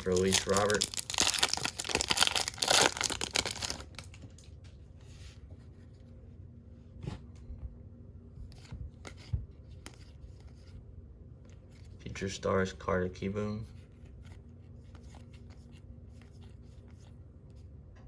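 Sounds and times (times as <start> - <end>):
wrapper tearing and crinkling: 0.0 - 4.5
cards rustling and clicking: 0.0 - 4.6.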